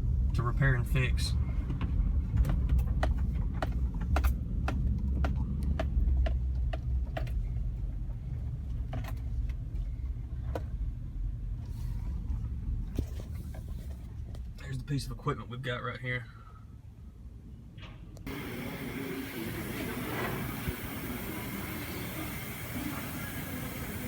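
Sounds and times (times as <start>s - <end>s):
vehicle engine and road rumble: 0.0s - 24.0s.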